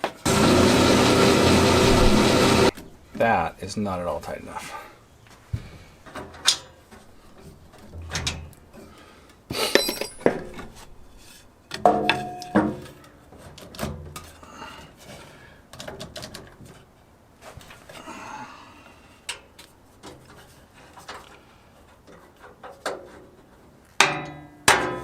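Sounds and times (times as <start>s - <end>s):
metal tools clinking: 9.6s - 11.1s
short metallic rings: 9.7s - 10.6s.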